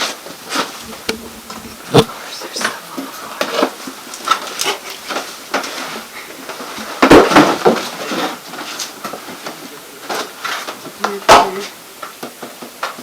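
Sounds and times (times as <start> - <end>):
footsteps: 0.8 - 3.6.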